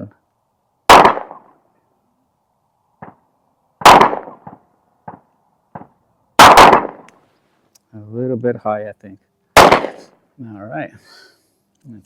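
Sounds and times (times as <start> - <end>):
pistol shots: 0.9 - 1.5, 3.8 - 7.1, 9.6 - 10.1.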